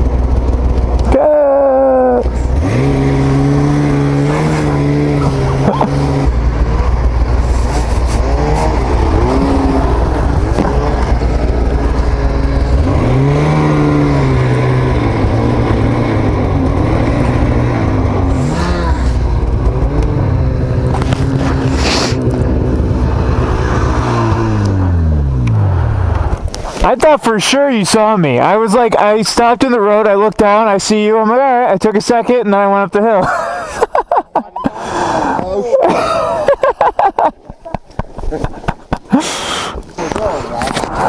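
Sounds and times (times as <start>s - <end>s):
snowmobile engine revving: 0.0s - 41.0s.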